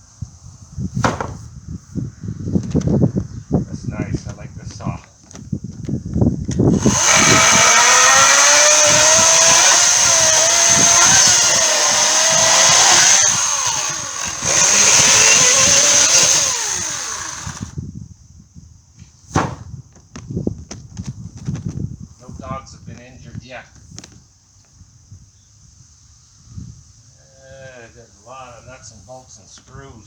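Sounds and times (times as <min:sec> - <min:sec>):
sharp knock: 0:01.0 - 0:01.5, 0:19.3 - 0:19.7
chainsaw cutting wood: 0:01.1 - 0:01.4, 0:06.5 - 0:17.8.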